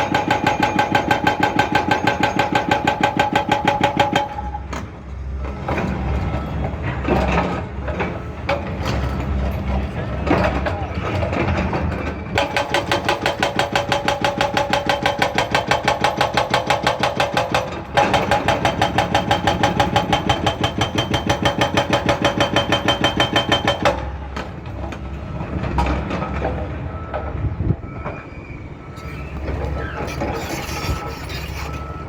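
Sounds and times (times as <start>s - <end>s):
hydraulic breaker hammering: 0.0s - 5.0s, 11.2s - 26.6s
excavator diesel engine running: 0.0s - 32.0s.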